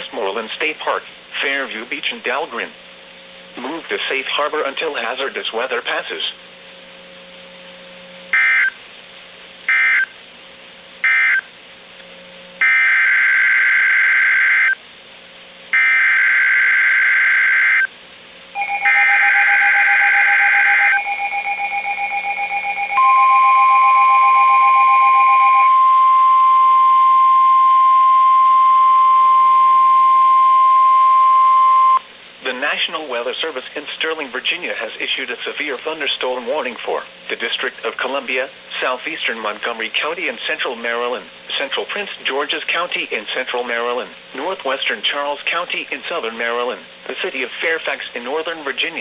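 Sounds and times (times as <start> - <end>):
steady single-pitch alarm tone: 8.3 - 8.8, 9.7 - 10.1, 11.0 - 11.5, 12.6 - 14.8, 15.7 - 17.9, 18.6 - 32.1.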